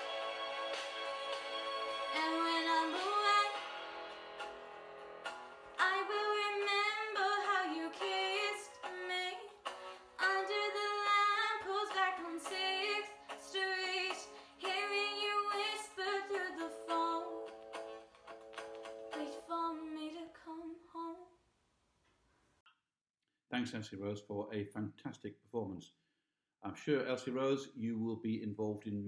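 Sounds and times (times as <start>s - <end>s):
instrumental accompaniment: 0.0s - 10.4s
girl singing: 2.1s - 3.7s, 5.8s - 9.6s, 10.2s - 17.4s, 19.2s - 21.3s.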